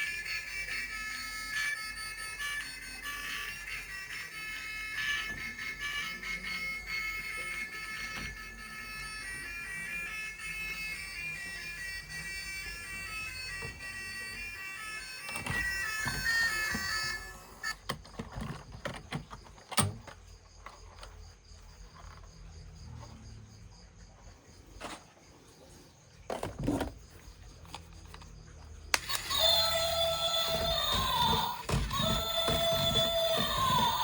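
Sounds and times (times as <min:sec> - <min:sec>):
plastic toys clicking and knocking: 0:13.3 - 0:22.3, 0:27.6 - 0:34.0.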